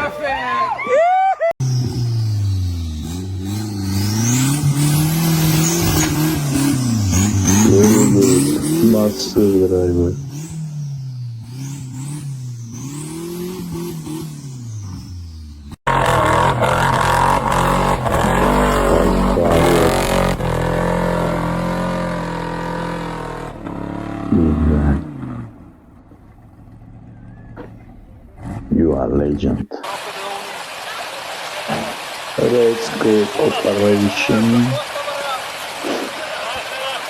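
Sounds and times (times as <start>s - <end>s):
engine running hard: 1.6s - 28.7s
off-road vehicle engine revving: 1.6s - 37.0s.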